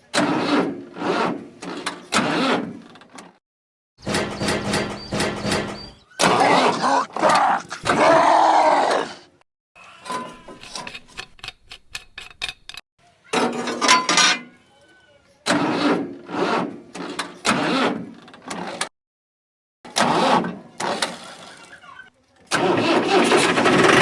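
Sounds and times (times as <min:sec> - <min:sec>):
small engine running roughly: 0:22.6 - 0:24.0.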